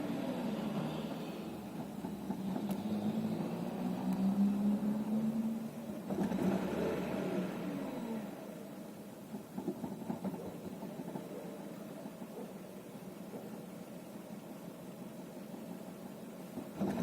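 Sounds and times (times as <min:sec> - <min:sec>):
car engine running: 0:00.0 - 0:17.0
engine knocking: 0:15.9 - 0:17.0.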